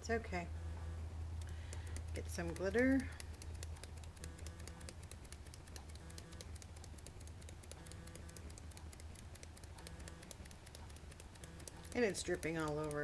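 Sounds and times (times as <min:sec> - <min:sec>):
steady low hum: 0:00.0 - 0:13.0
faint rapid clicking: 0:01.4 - 0:13.0.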